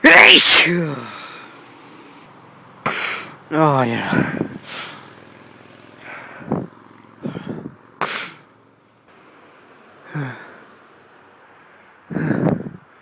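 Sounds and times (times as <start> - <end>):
man sneezing: 0.0 - 1.2
voiced sigh: 0.7 - 1.5
gasping breaths: 6.0 - 8.5, 11.5 - 13.0.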